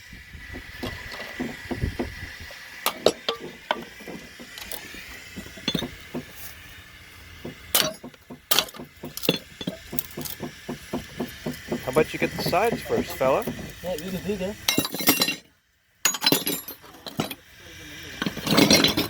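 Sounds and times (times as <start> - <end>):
ceramic pieces clinking: 5.4 - 6.0, 7.8 - 10.0, 14.7 - 15.5, 16.1 - 17.4, 18.2 - 19.0.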